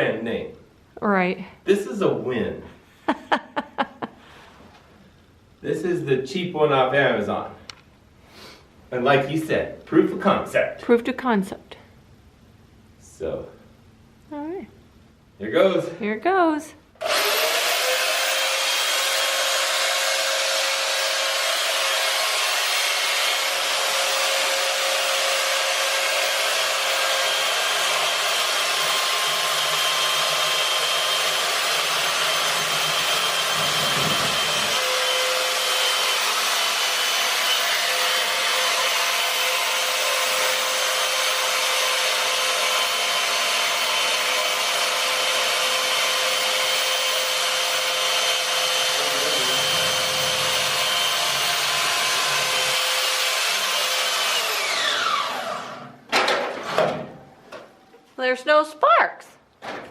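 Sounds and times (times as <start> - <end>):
bandsaw motor whining: 17.0 - 56.0.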